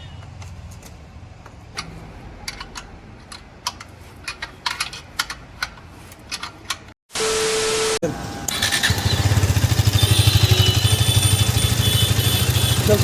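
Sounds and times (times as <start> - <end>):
hand tools clicking on metal: 1.7 - 6.9.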